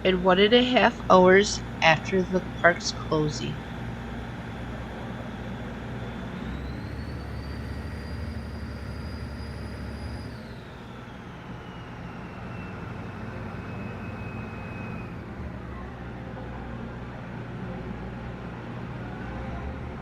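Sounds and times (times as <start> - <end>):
high whine: 0.0 - 15.8
boat engines droning: 0.0 - 20.0.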